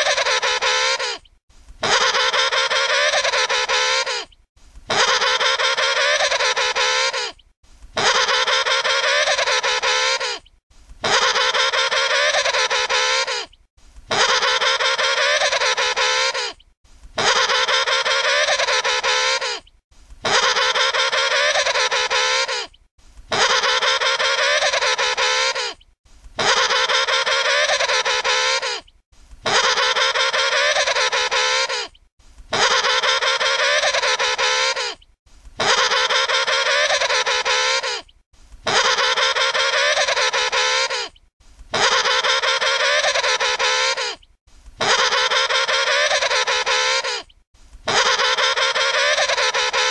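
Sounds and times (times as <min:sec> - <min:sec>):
penguin trumpeting call: 0:00.0 - 0:01.2, 0:01.8 - 0:04.3, 0:04.9 - 0:07.4, 0:08.0 - 0:10.4, 0:11.0 - 0:13.5, 0:14.1 - 0:16.6, 0:17.2 - 0:19.6, 0:20.2 - 0:22.7, 0:23.3 - 0:25.8, 0:26.4 - 0:28.8, 0:29.4 - 0:31.9, 0:32.5 - 0:35.0, 0:35.6 - 0:38.0, 0:38.7 - 0:41.1, 0:41.7 - 0:44.2, 0:44.8 - 0:47.3, 0:47.9 - 0:49.9.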